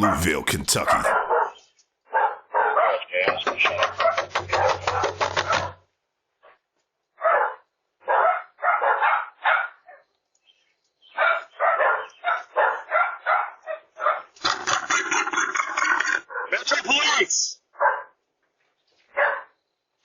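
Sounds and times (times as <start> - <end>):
dog barking: 1.1 - 3.1, 7.2 - 10.0, 11.2 - 14.4, 16.3 - 16.6, 17.8 - 18.2, 19.1 - 19.6.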